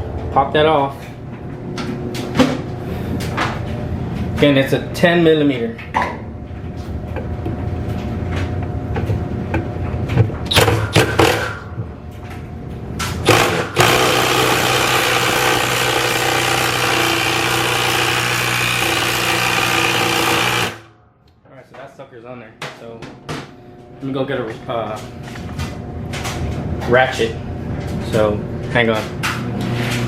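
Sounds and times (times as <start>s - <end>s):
loud motor whir: 13.2s - 20.9s.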